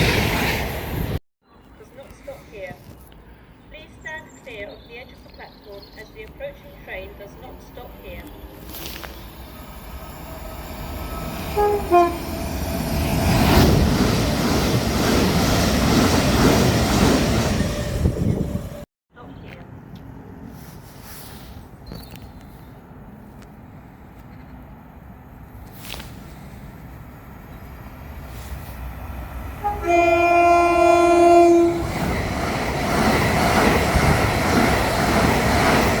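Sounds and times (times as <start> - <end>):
train wheels rumbling on rail: 6.2 - 18.8, 20.4 - 36.0
train two-note horn: 11.5 - 12.3, 29.6 - 31.9.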